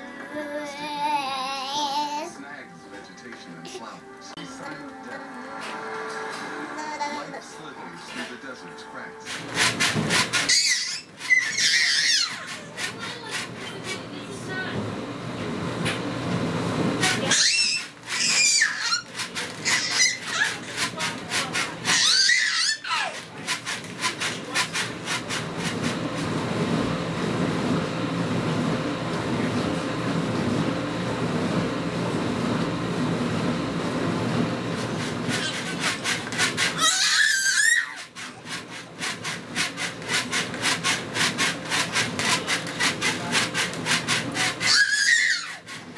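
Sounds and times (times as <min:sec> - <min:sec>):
high squeaky whines: 0:08.6 - 0:12.5, 0:17.1 - 0:20.6, 0:21.8 - 0:23.2, 0:36.6 - 0:38.4, 0:44.4 - 0:45.9.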